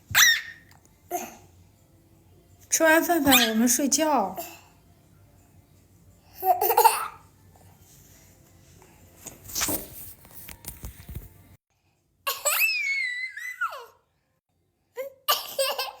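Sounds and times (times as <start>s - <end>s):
toddler squealing and babbling: 0.1s - 0.6s, 12.4s - 14.0s.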